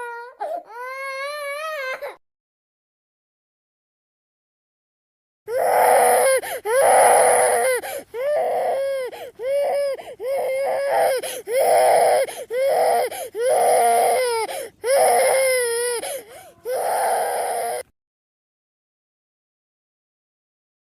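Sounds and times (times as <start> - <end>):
baby crying: 0.0 - 2.2, 5.5 - 17.9.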